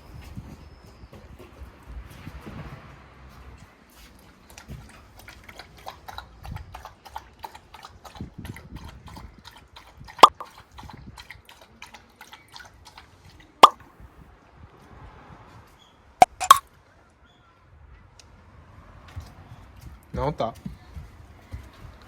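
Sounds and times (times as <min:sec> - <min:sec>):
clicking mouth noises: 0:10.2 - 0:10.5, 0:16.2 - 0:16.6.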